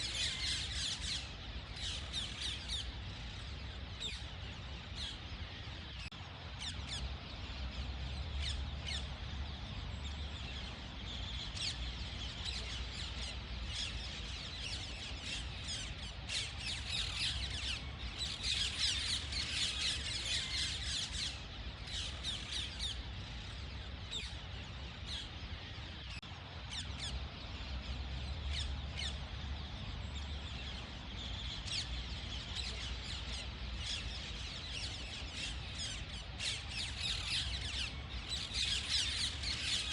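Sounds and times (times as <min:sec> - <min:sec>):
low steady rumble: 0:00.0 - 0:39.9.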